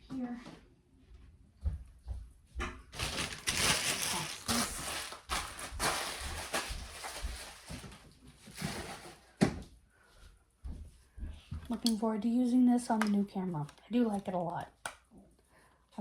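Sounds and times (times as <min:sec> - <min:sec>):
packaging rustling and handling: 0:02.9 - 0:09.4.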